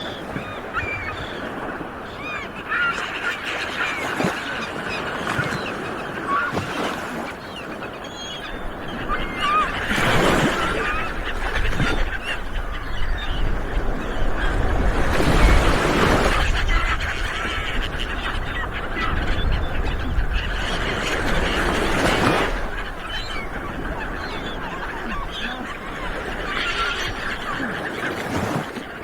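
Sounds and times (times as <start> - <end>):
birds chirping: 0.0 - 29.0
sea waves washing: 8.5 - 29.0.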